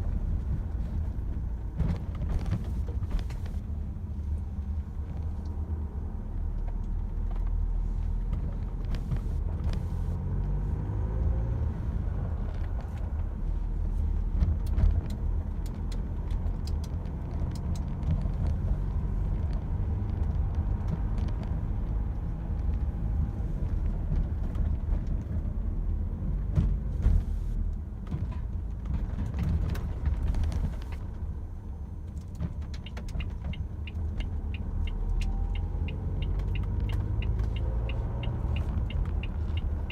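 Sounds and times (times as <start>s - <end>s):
car engine rumbling: 0.0s - 39.9s
engine clicks and ticks: 14.5s - 18.3s, 32.0s - 39.9s.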